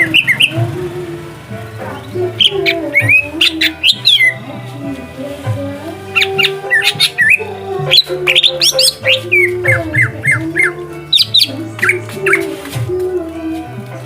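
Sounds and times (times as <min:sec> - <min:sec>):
bird singing sharp chirps: 0:00.0 - 0:00.7, 0:02.0 - 0:04.4, 0:06.1 - 0:12.6
background music: 0:00.0 - 0:14.0.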